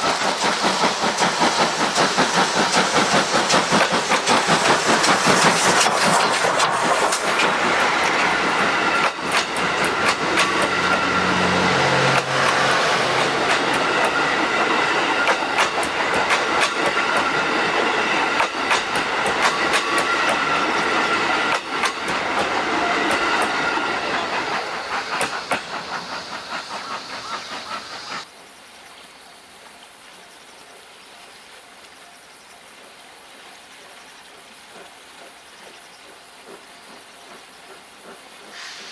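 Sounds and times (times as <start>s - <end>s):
train wheels clicking over rail joints: 0.0s - 28.3s, 34.7s - 38.9s
steady high hiss: 0.0s - 30.4s.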